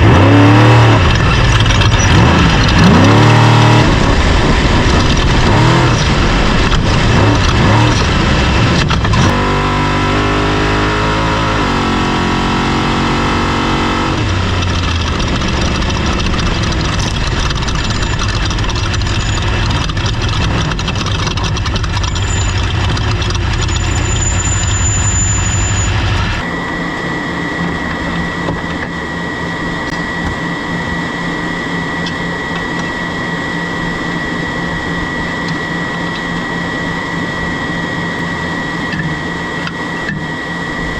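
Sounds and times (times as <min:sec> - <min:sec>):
race vehicle engine revving: 0:00.0 - 0:31.0
steady high whine: 0:00.0 - 0:40.9.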